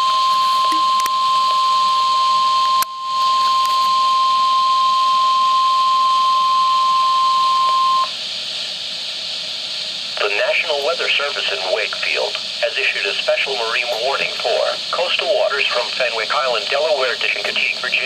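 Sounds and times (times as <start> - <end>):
steady loud alarm tone: 0.0 - 8.2
radio hiss: 8.0 - 18.0.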